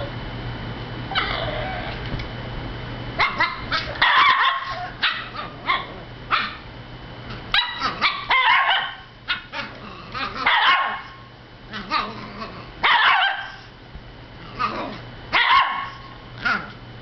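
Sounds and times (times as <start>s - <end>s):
puppy barking and yipping: 3.2s - 6.6s, 7.5s - 12.1s, 12.8s - 13.7s, 15.3s - 16.7s.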